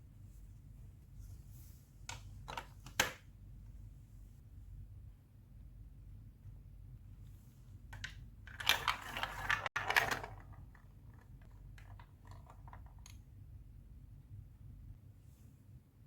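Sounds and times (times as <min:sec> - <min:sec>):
glass marbles rattling down plastic track: 0:08.5 - 0:13.0.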